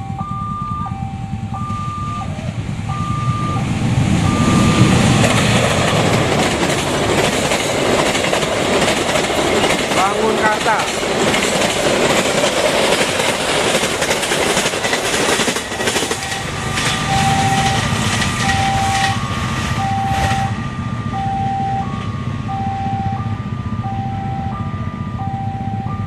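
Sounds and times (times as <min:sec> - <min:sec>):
two-tone warning siren: 0:00.0 - 0:08.2, 0:15.1 - 0:26.0
train rattling past: 0:00.3 - 0:25.8.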